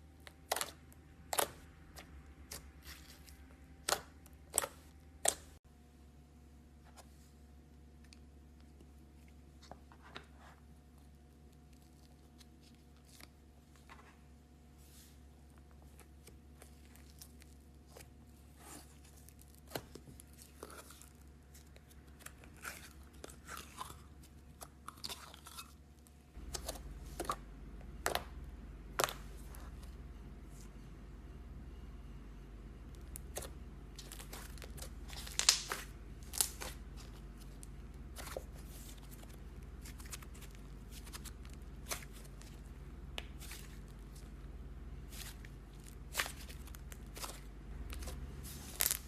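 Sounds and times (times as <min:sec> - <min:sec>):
low background hum: 0:00.0 - 0:49.0
slime crackling and popping: 0:33.1 - 0:44.3, 0:45.1 - 0:49.0.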